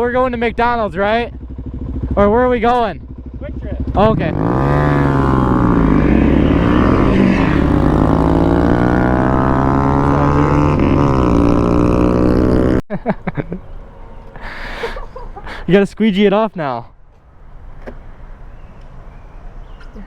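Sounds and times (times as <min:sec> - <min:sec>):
motorcycle engine revving: 0:00.4 - 0:12.8.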